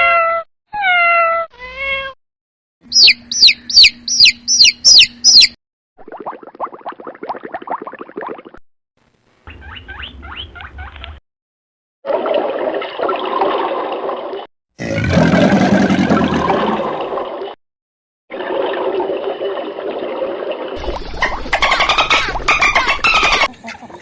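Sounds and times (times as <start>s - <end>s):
quick rising animal chirps: 2.9s - 5.6s.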